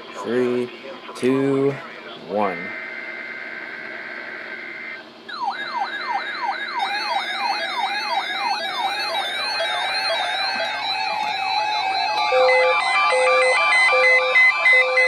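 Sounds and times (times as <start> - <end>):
higher warbling alarm: 4.6 - 15.0
siren-like falling alarm tone: 4.6 - 15.0
two steady high data tones: 4.6 - 15.0.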